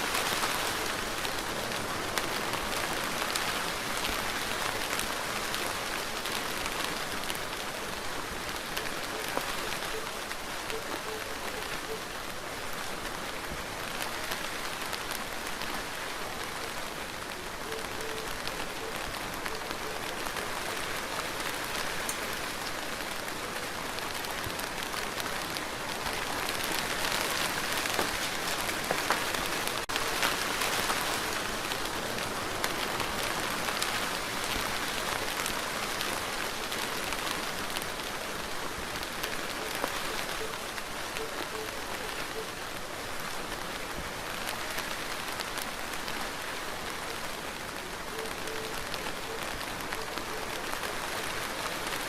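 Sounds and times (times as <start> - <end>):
rain pattering on a surface: 0.0 - 52.0.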